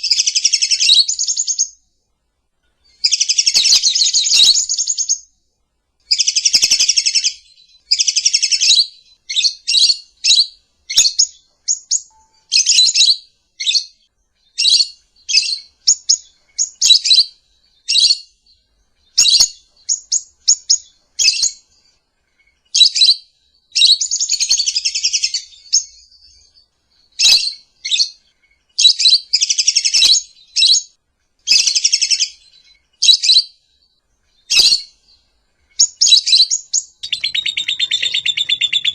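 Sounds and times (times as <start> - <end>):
bird chirping shrilly: 34.5 - 34.9, 35.8 - 38.9.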